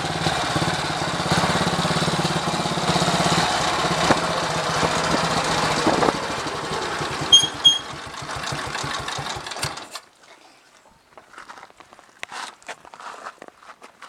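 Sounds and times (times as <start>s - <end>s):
motorcycle engine idling: 0.0s - 9.8s
short high chirps: 7.3s - 8.0s.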